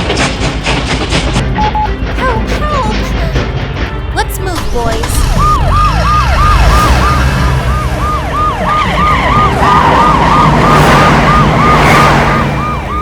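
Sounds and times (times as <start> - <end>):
low rumble: 0.0 - 13.0
police siren yelping: 5.1 - 13.0.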